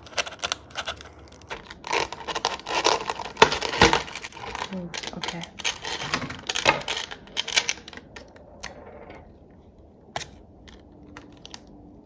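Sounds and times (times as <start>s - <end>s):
small parts clicking and rattling: 0.0s - 8.7s.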